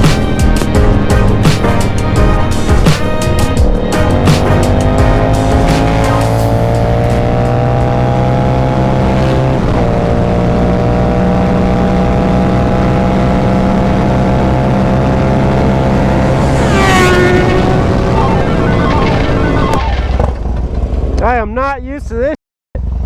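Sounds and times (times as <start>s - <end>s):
motorcycle engine accelerating: 0.0s - 21.3s
wind rush: 14.9s - 19.7s.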